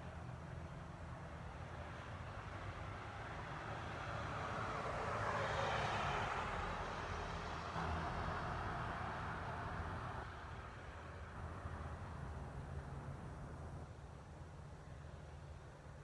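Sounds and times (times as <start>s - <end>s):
vehicle passing by: 2.9s - 10.3s.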